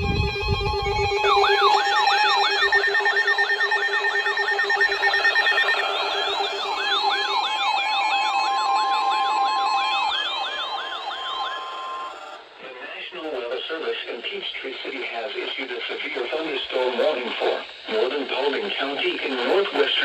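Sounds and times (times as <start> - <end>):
rising and falling alert siren: 0.0 - 12.5.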